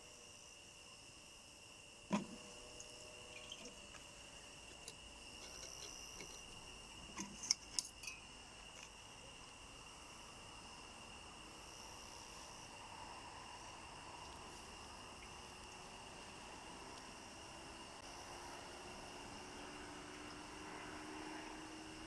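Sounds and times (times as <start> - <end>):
high-pitched insect chirring: 2.7 - 4.0.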